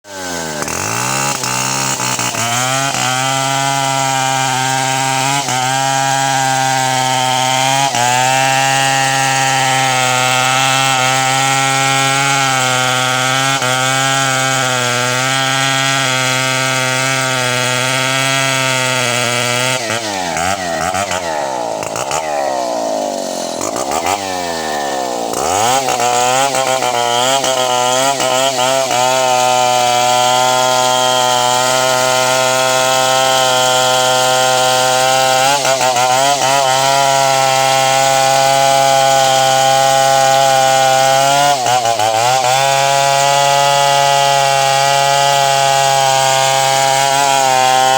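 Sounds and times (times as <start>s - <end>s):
chainsaw cutting wood: 0.0s - 47.9s.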